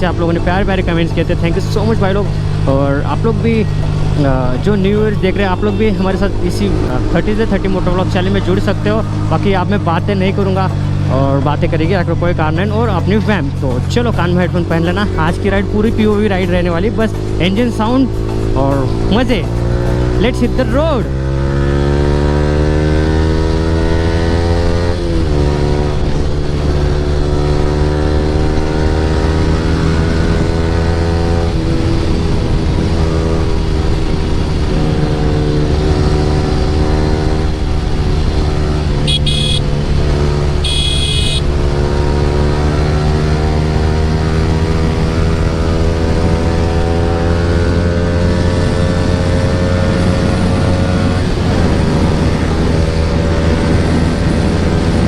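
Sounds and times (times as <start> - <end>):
motorcycle engine accelerating: 0.0 - 55.0
short horn beeps: 39.1 - 39.7, 40.6 - 41.5.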